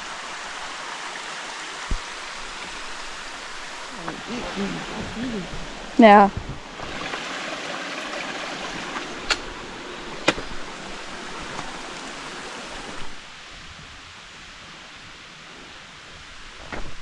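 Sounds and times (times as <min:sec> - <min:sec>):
mountain stream rushing: 0:00.0 - 0:17.0
sharp clicks: 0:08.9 - 0:09.6.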